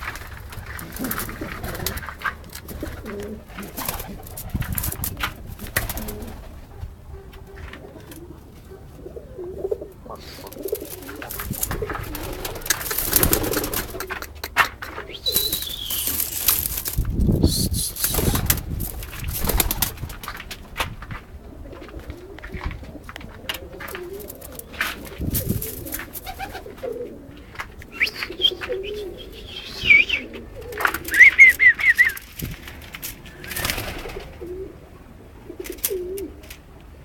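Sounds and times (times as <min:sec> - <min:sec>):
clicks and rustles: 0:00.0 - 0:08.7, 0:10.0 - 0:29.4, 0:30.2 - 0:34.3, 0:35.6 - 0:36.9
pigeons cooing: 0:00.0 - 0:20.4, 0:21.0 - 0:36.7
high chirp: 0:15.1 - 0:16.3.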